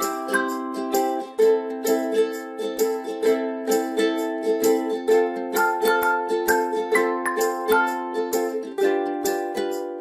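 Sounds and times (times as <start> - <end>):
plucked ukulele melody: 0.0 - 10.0.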